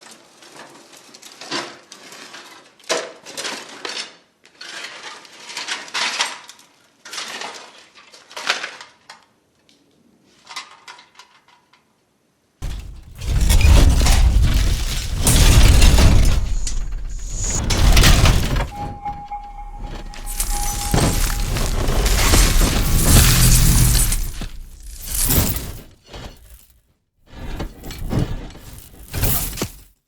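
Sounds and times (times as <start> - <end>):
heavy metallic crashing with rumble: 12.6 - 25.8
metal objects clanking and scraping: 12.6 - 26.7, 27.3 - 29.9.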